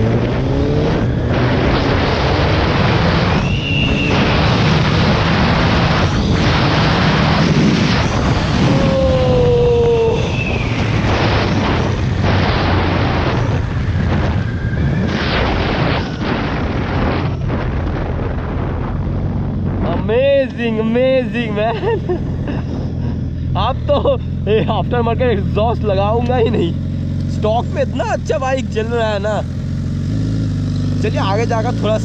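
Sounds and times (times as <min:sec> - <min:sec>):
wind buffeting microphone: 0:00.0 - 0:24.5
motorcycle engine accelerating hard: 0:00.0 - 0:32.0.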